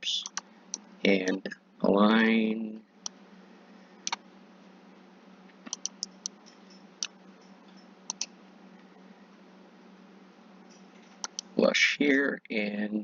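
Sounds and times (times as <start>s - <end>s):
steady low hum: 0.0s - 13.0s
mouse buttons clicking: 5.7s - 7.1s, 8.1s - 8.3s.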